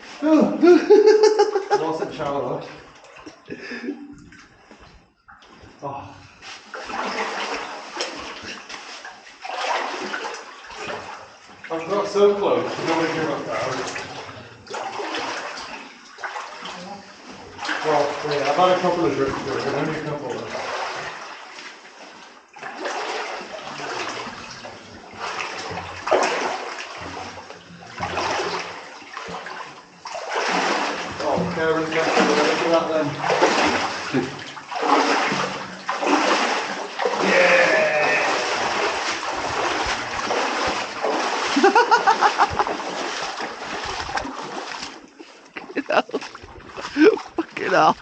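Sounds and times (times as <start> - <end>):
wading through water splashing: 0.0 - 48.0
person vocalizing: 37.2 - 38.7, 45.6 - 48.0.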